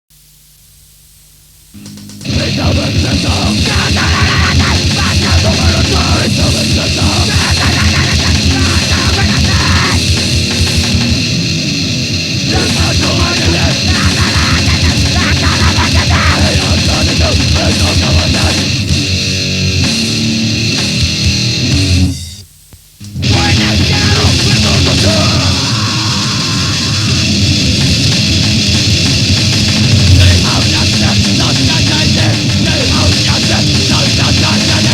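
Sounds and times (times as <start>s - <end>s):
tape hiss: 0.1s - 34.9s
very fast dense drumming: 1.8s - 11.3s, 12.5s - 19.2s, 23.2s - 26.4s, 27.1s - 34.9s
distorted grindcore band: 1.8s - 22.4s, 23.0s - 34.9s.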